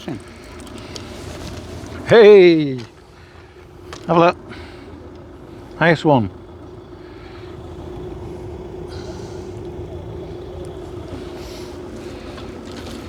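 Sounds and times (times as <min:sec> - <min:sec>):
soft rustles: 0:00.0 - 0:02.1
low mechanical drone: 0:00.0 - 0:13.0.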